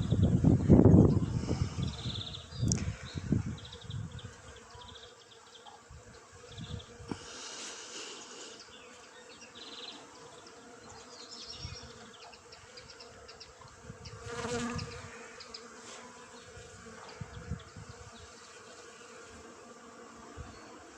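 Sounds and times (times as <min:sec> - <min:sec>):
bee buzzing close by: 0:00.0 - 0:20.9
bees buzzing: 0:00.1 - 0:20.9.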